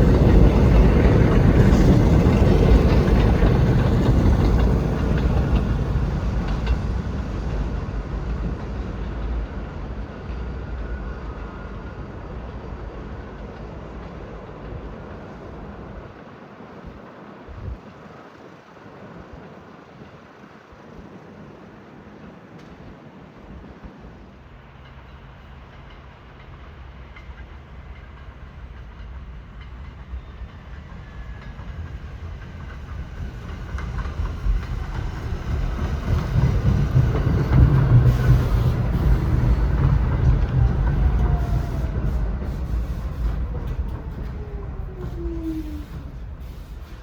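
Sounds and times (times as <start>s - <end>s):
subway train rumbling: 0.0s - 47.0s
train whine falling in pitch: 33.5s - 47.0s.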